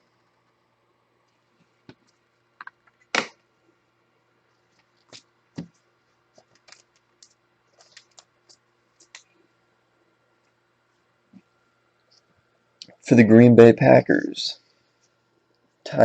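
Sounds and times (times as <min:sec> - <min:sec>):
cards clicking and scraping: 0:06.4 - 0:09.3.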